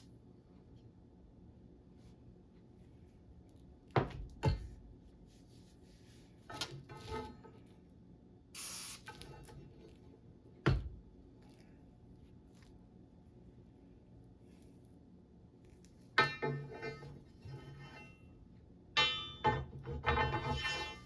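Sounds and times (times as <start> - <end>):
brief hiss: 8.6 - 9.2.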